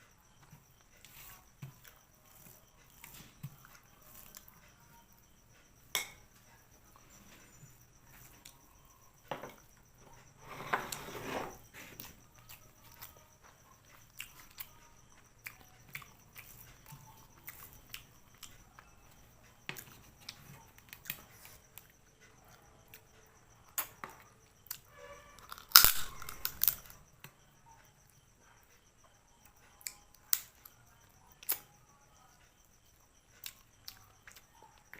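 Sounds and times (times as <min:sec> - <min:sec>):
shells and bones cracking while chewing: 0:25.4 - 0:26.9.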